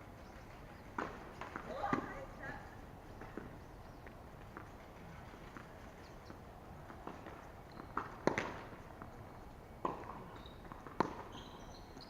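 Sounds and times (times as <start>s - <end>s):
tennis ball bouncing: 1.0s - 2.2s, 3.2s - 3.6s, 6.8s - 9.1s, 9.8s - 11.7s
tennis ball struck by rackets: 1.0s - 2.2s, 6.9s - 8.8s, 9.8s - 11.6s.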